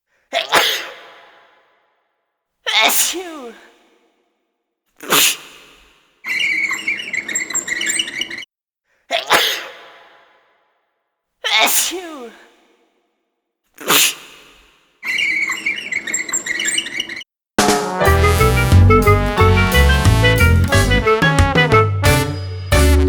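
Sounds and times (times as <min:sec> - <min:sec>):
person sneezing: 0:00.3 - 0:01.3, 0:02.7 - 0:03.7, 0:05.0 - 0:05.8, 0:09.1 - 0:10.0, 0:11.5 - 0:12.4, 0:13.8 - 0:14.6.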